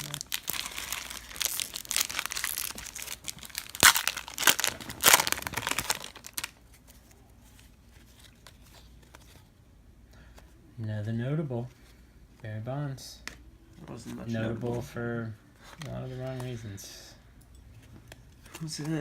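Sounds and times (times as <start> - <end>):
wrapper tearing: 0.0 - 6.6
wrapper crinkling: 0.0 - 7.2.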